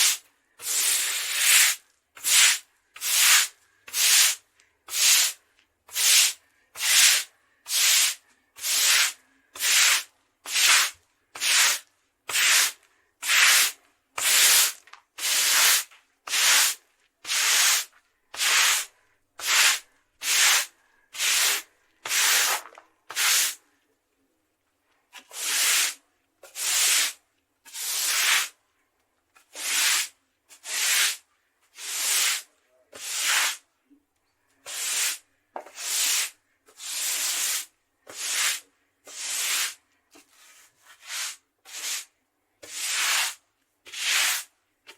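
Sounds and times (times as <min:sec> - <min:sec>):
scrubbing concrete: 0:07.8 - 0:23.6, 0:25.1 - 0:28.5, 0:34.7 - 0:42.0, 0:42.6 - 0:44.9.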